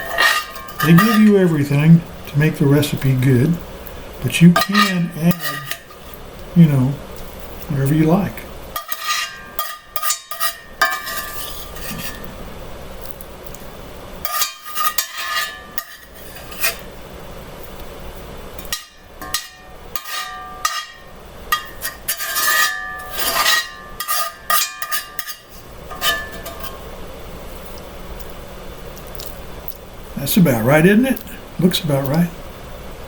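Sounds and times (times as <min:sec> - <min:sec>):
metal spoon scraping a pot: 0:00.0 - 0:01.5, 0:04.5 - 0:06.2, 0:08.8 - 0:12.4, 0:14.2 - 0:16.9, 0:18.6 - 0:26.8.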